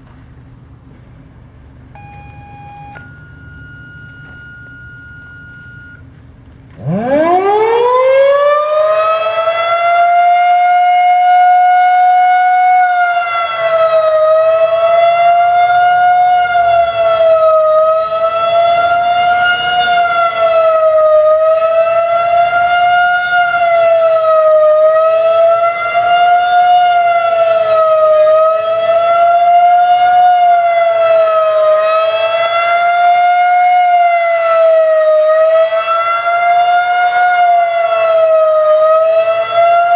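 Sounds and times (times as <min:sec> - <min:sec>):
rotating warning siren: 0:02.0 - 0:06.1, 0:06.8 - 0:39.9.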